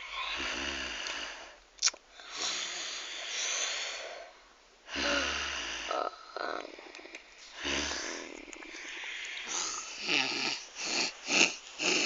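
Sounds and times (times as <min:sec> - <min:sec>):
person snoring: 0:00.0 - 0:01.5, 0:04.9 - 0:06.9, 0:07.6 - 0:12.0.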